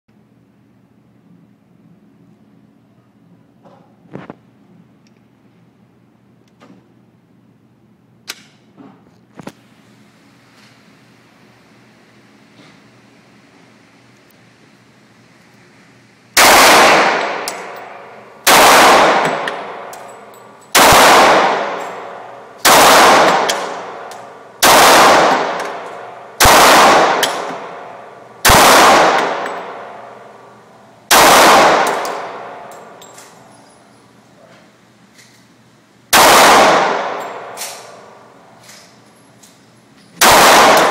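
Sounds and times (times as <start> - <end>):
pistol shots echoing: 16.4 - 30.5, 31.1 - 33.0, 36.1 - 38.2, 40.2 - 40.9.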